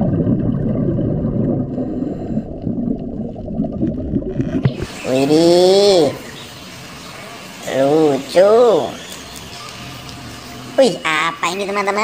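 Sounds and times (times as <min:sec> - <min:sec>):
underwater bubbling and gurgling: 0:00.0 - 0:05.2.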